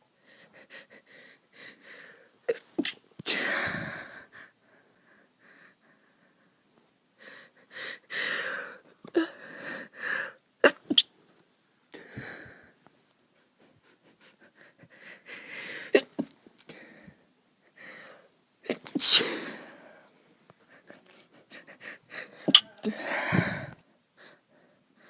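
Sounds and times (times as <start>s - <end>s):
woman's breathy inhales: 3.5s - 4.5s, 21.6s - 24.7s
woman sneezing: 18.7s - 19.7s, 22.5s - 23.5s.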